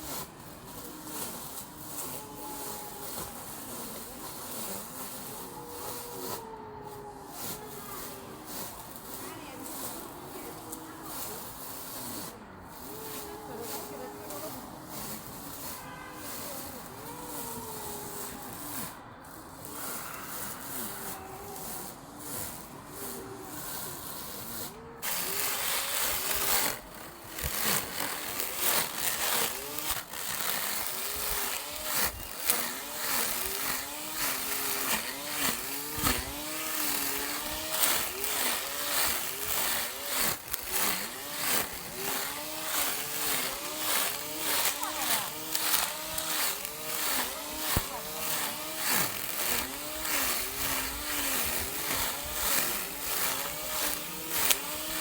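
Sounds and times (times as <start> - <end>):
loud steady motor whir: 25.0 - 55.0.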